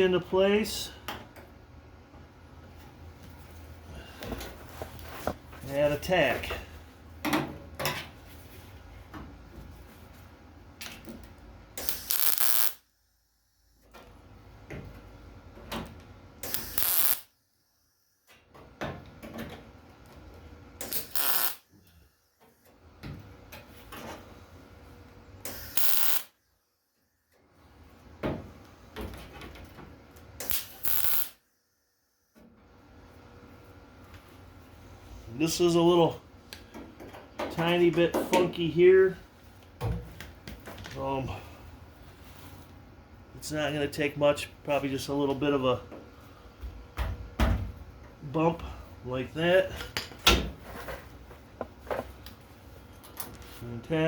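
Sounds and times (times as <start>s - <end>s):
welding bursts: 11.8s - 12.8s, 16.4s - 17.3s, 20.8s - 21.7s, 25.4s - 26.3s, 30.4s - 31.4s.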